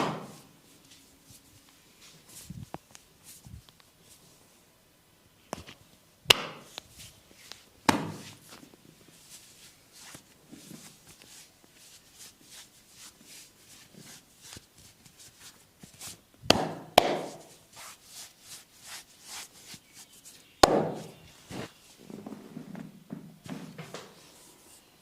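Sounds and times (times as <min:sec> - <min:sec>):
hands patting and rubbing skin: 0:05.6 - 0:21.8
sharp slaps on skin: 0:06.3 - 0:06.7, 0:16.5 - 0:17.4, 0:20.6 - 0:21.1.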